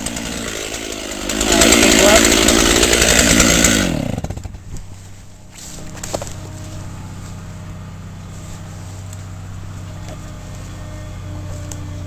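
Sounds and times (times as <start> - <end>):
engine idling: 5.8 - 12.0.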